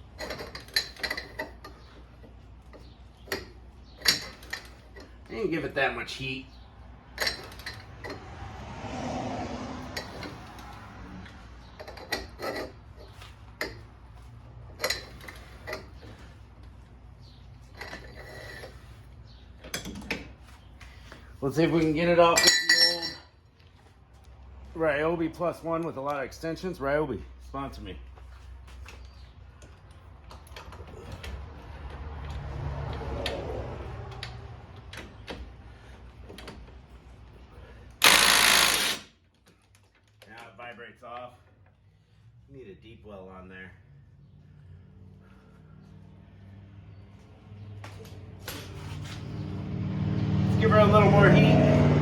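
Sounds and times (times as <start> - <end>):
metal tools clinking: 0.0 - 5.3, 7.1 - 8.2, 11.6 - 13.9, 14.7 - 16.3, 17.6 - 19.0, 22.2 - 23.4
cordless tool whirring: 38.0 - 39.1.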